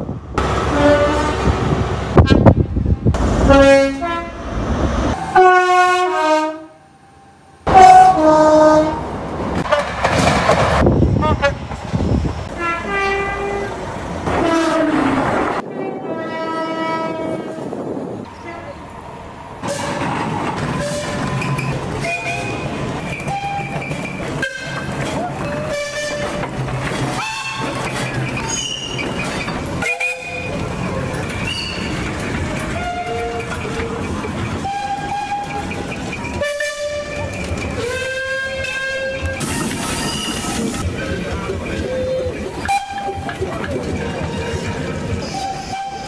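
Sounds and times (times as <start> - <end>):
passing train noise: 0.0 - 46.0
train horn steady note: 0.7 - 1.5, 3.5 - 4.4, 5.3 - 6.9, 7.7 - 9.0, 14.4 - 15.2, 15.9 - 17.7
two-tone train horn: 0.7 - 1.5, 3.5 - 4.4, 5.2 - 6.9, 7.7 - 9.0, 12.5 - 13.7, 14.3 - 17.7, 25.6 - 26.4, 32.8 - 33.4, 34.6 - 35.6, 36.4 - 39.6, 41.9 - 43.2, 45.2 - 46.0.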